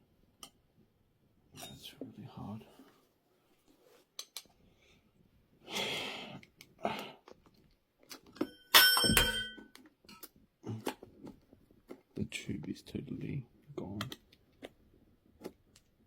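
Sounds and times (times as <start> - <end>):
loud metallic clang: 8.7 - 9.6.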